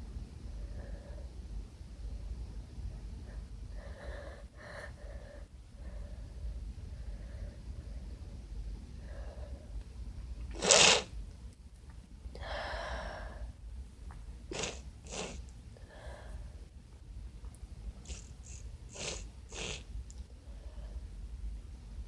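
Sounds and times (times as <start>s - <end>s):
person sneezing: 10.6s - 11.1s.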